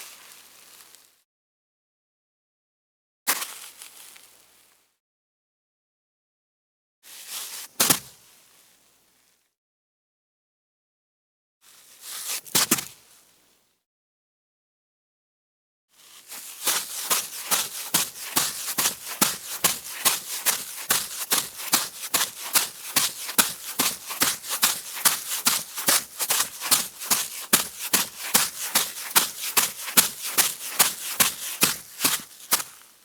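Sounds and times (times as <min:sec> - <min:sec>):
bare footsteps on wet sand: 0:16.4 - 0:32.9.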